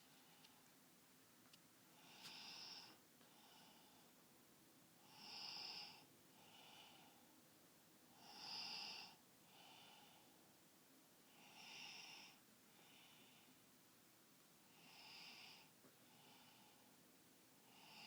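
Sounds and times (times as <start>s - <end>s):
soft breathy snoring: 1.9s - 4.1s, 5.0s - 7.3s, 8.1s - 10.5s, 11.3s - 13.6s, 14.6s - 17.0s, 17.6s - 18.0s.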